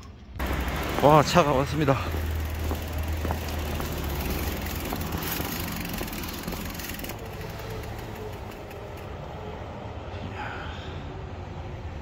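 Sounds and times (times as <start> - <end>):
bus diesel engine idling: 0.4 - 9.5.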